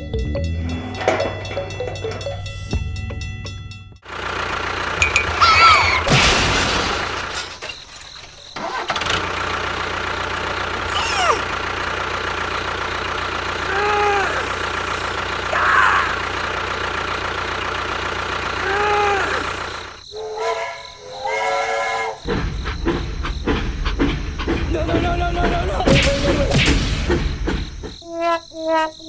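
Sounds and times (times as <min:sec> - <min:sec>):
rising-and-falling tones: 0:00.0 - 0:03.6
engine running: 0:00.0 - 0:21.3, 0:22.2 - 0:28.0
falling whistle-like glide: 0:20.1 - 0:22.3
horn-like tone: 0:20.1 - 0:22.3.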